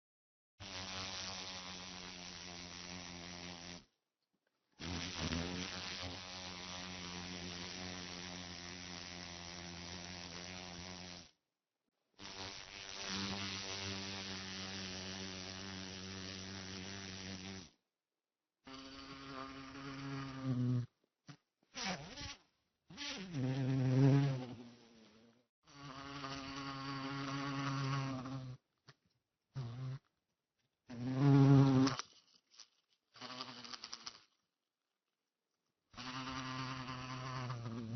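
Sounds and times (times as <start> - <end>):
flying insect buzzing: 4.8 - 11.3, 12.2 - 17.8, 18.7 - 20.9, 21.8 - 24.8, 25.7 - 28.6, 30.9 - 34.4, 36.0 - 37.9.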